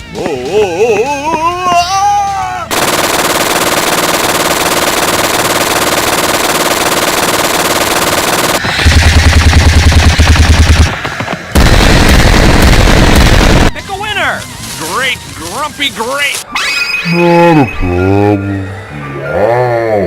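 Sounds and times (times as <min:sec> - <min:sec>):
rapid machine-gun fire: 0:02.7 - 0:13.7
heavy gunfire burst with deep thuds: 0:02.7 - 0:13.8.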